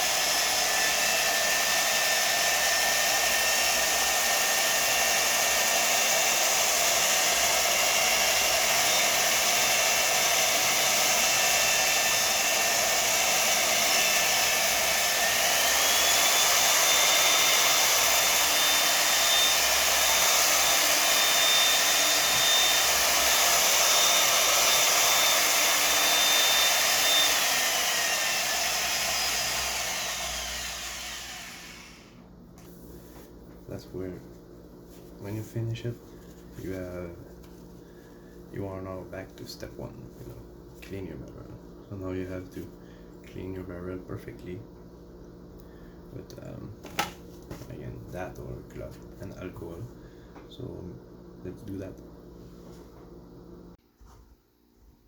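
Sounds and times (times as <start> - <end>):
small power tool whining: 0.0 - 32.2.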